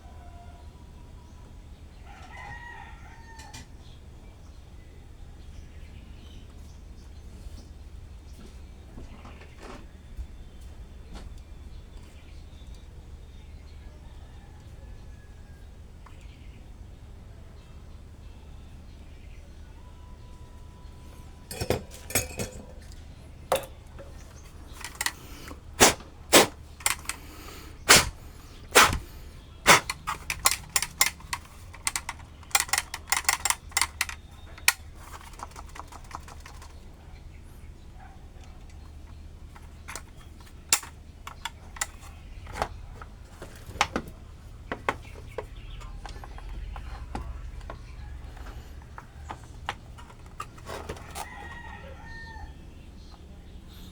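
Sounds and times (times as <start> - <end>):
hard objects clicking and knocking: 21.5 - 36.8, 39.5 - 51.3.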